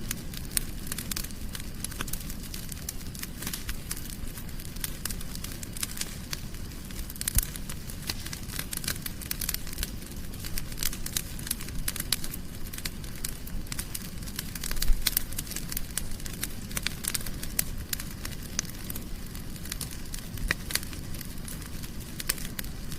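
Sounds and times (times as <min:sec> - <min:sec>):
low rumble of flames: 0:00.0 - 0:22.9
wood fire crackling and popping: 0:00.0 - 0:22.9.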